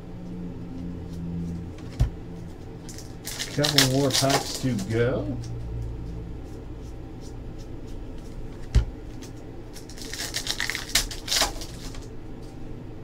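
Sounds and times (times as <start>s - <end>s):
wrapper crinkling and tearing: 2.8s - 4.9s, 9.2s - 12.1s
cards ticking: 2.9s - 5.6s
wrapper sharp snaps: 9.8s - 12.0s.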